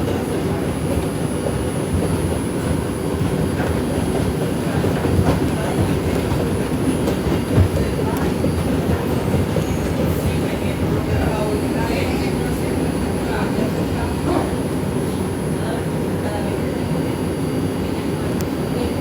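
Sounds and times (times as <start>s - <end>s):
wheels clicking on track: 0.0s - 14.6s
subway train rumbling: 0.0s - 19.0s.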